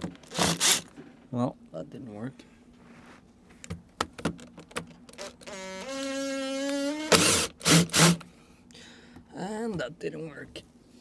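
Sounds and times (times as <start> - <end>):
loud harsh bursts: 0.3 - 0.8
power tool motor whining: 0.3 - 0.9, 5.2 - 8.2.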